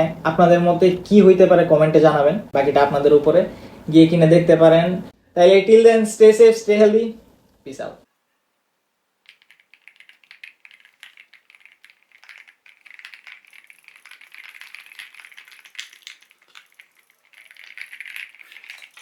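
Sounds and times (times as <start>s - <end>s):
mechanical keyboard typing: 9.3s - 19.0s.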